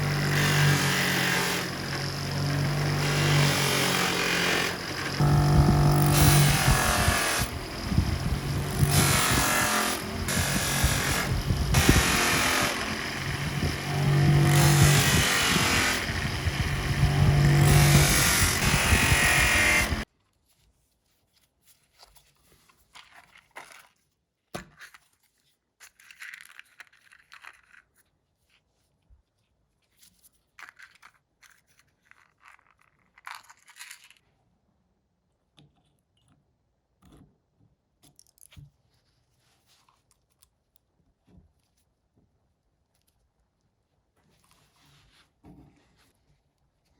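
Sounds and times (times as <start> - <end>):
power tool humming: 0.0 - 20.1
small scrapes and clicks of parts: 20.0 - 34.4, 35.5 - 37.4, 38.0 - 42.1, 42.8 - 46.7.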